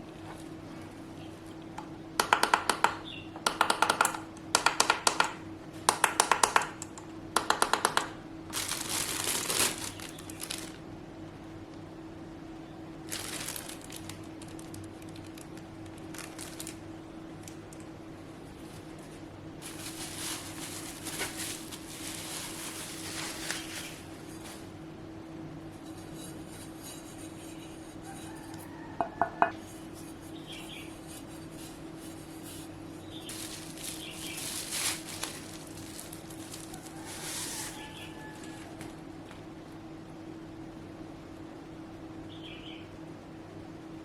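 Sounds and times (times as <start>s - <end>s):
steady hum: 0.0s - 44.0s
packaging rustling and scraping: 8.5s - 10.8s, 13.1s - 16.8s, 18.6s - 24.8s, 30.9s - 39.0s.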